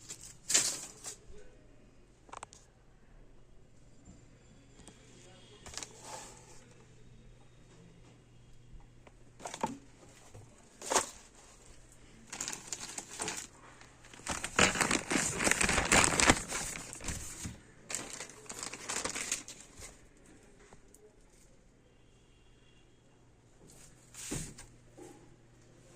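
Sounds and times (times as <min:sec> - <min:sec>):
packaging crinkling and rustling: 0:00.0 - 0:01.2, 0:05.7 - 0:06.3, 0:09.4 - 0:09.8, 0:10.8 - 0:20.1.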